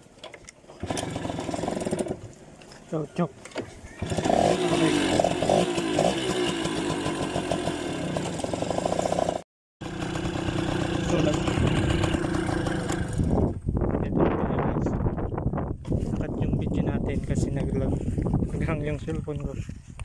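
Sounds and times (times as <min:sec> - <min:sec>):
small two-stroke engine running: 0:00.8 - 0:02.3, 0:04.0 - 0:13.6.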